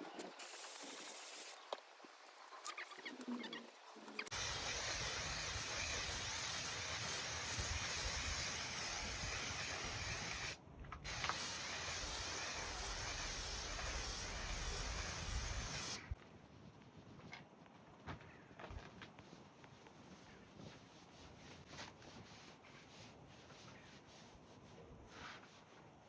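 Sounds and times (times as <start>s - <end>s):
aerosol can spraying: 4.3s - 16.2s.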